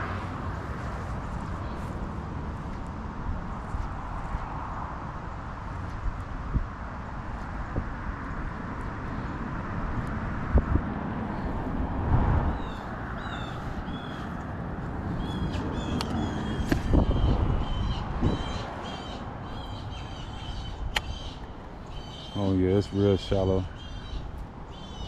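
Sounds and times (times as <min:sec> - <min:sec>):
low rumbling noise: 0:00.0 - 0:22.4
birds making harsh calls: 0:12.5 - 0:14.5, 0:15.1 - 0:25.0.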